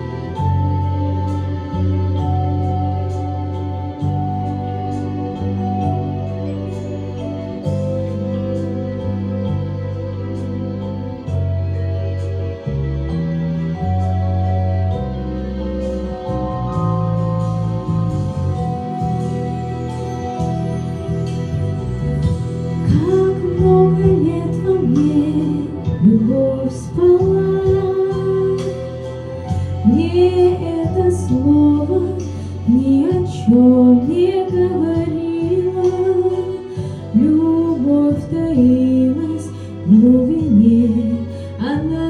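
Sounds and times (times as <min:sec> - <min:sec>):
sustained instrumental accompaniment: 0:00.0 - 0:42.0
woman singing: 0:22.8 - 0:29.1, 0:29.7 - 0:42.0.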